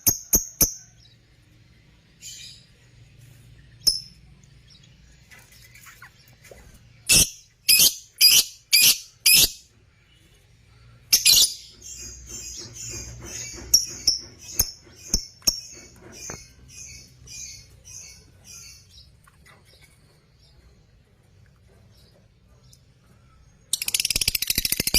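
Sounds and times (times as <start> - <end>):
lovebirds shrieking and chirping: 5.2 - 20.6.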